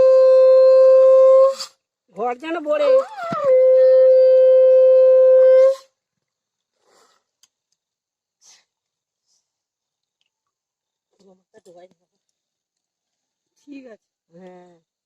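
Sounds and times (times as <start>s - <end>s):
conch shell blown: 0.0s - 1.8s, 2.9s - 5.9s.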